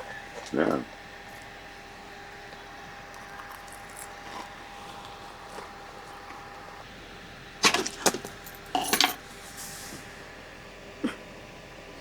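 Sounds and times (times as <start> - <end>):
faint steady hum: 0.0 - 12.0
sharp knocks and clatters: 7.6 - 9.2.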